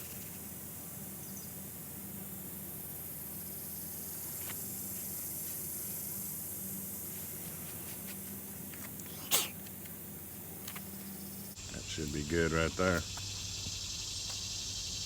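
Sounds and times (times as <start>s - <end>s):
high-pitched insect chorus: 0.0s - 8.4s, 9.0s - 15.0s
sharp hissing burst: 9.1s - 9.6s.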